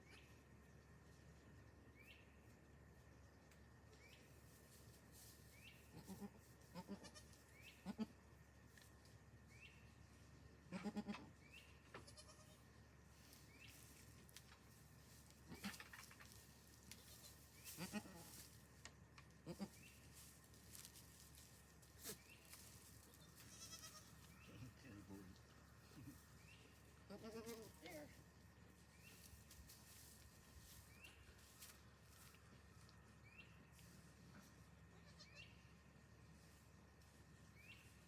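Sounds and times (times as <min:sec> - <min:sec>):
goat bleating faintly: 0:12.0 - 0:12.6, 0:23.3 - 0:24.2.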